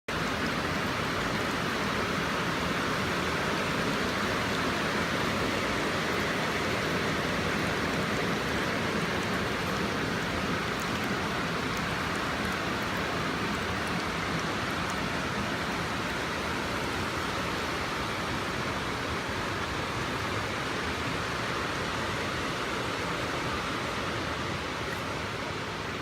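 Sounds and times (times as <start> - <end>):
water pouring and splashing: 0.1 - 20.6.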